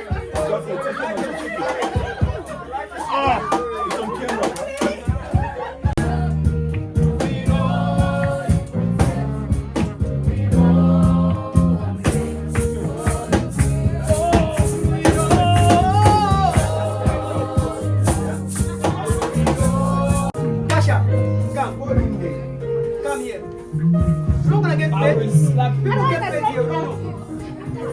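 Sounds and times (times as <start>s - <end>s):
shaker percussion: 0.0s - 22.4s
music with beat and bass: 0.0s - 27.9s
person singing: 5.9s - 20.6s.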